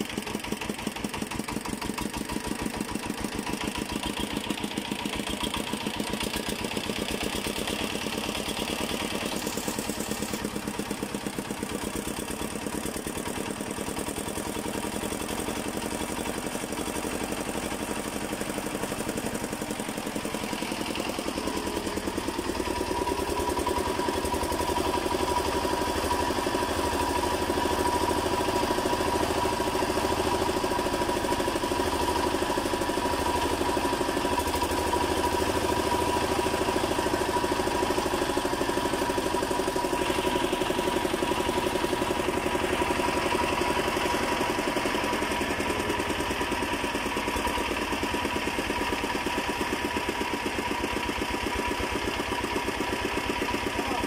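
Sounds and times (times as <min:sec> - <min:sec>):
diesel generator running: 0:00.0 - 0:54.0.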